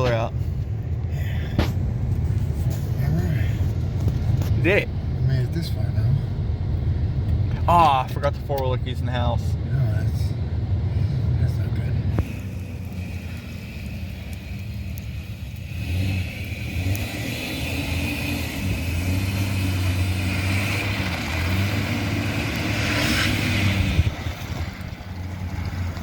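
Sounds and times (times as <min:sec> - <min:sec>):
truck engine running: 0:10.2 - 0:26.0.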